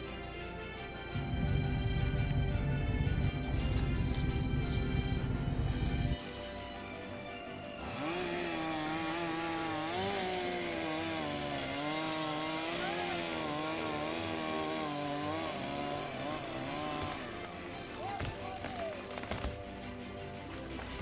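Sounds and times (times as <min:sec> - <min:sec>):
chainsaw cutting wood: 0:07.8 - 0:19.6.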